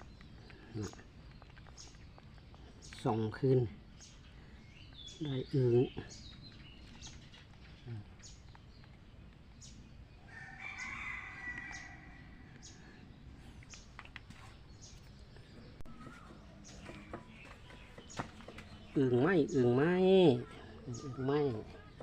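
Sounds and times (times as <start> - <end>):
rooster crowing: 10.3 - 12.6.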